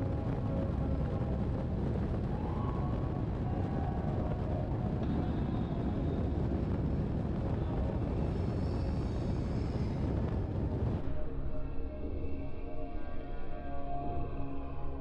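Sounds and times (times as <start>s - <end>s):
wind buffeting microphone: 0.0s - 11.1s.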